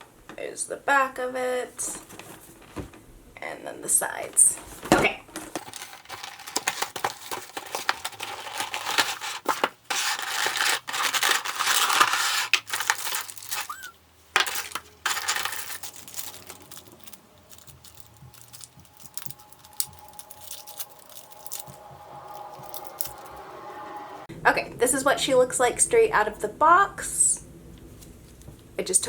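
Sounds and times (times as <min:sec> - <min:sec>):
packaging crinkling and tearing: 0:05.3 - 0:23.3.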